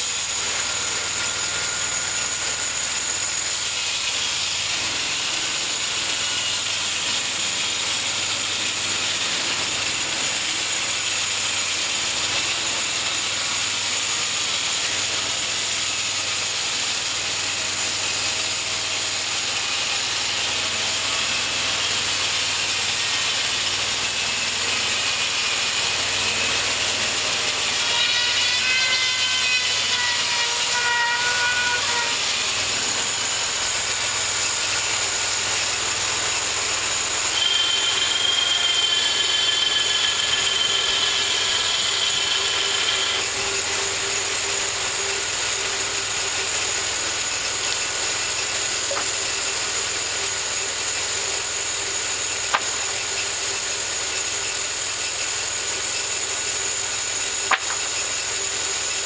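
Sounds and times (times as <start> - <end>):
bandsaw mill sawing log: 0.0 - 59.0.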